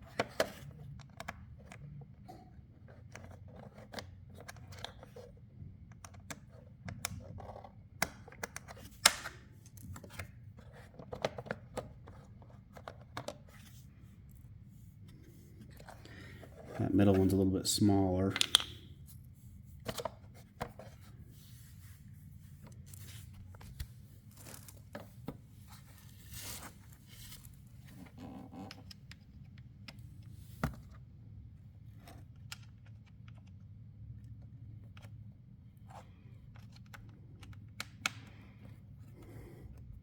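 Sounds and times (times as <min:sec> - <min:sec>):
low steady hum: 0:11.8 - 0:40.0.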